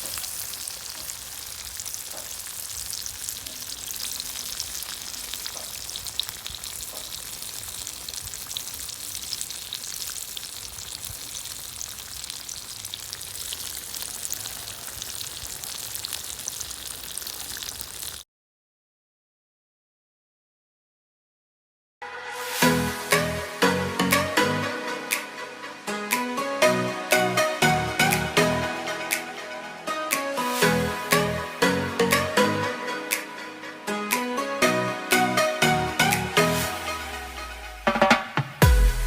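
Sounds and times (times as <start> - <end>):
deep-frying crackling sizzle: 0.0 - 18.2.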